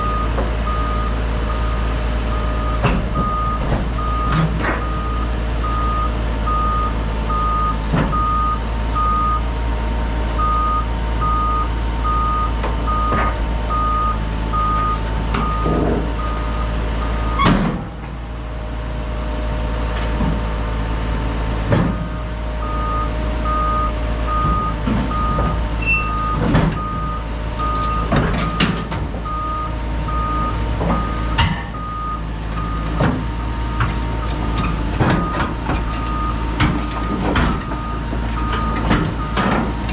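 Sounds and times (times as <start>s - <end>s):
travel alarm beeping: 0.0s - 9.5s, 10.4s - 17.4s, 22.6s - 28.6s
excavator diesel engine running: 0.0s - 39.9s
knocks and clanks: 17.4s - 18.2s, 21.7s - 22.1s, 26.3s - 27.0s, 27.8s - 29.3s, 30.8s - 31.8s, 32.4s - 39.9s.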